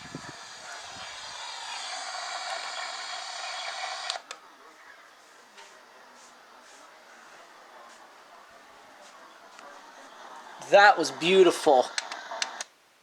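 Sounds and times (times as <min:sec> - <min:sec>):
interference tones: 0:00.0 - 0:04.7, 0:08.7 - 0:12.6
radio static hiss: 0:00.0 - 0:12.8
sharp clicks: 0:11.9 - 0:12.7.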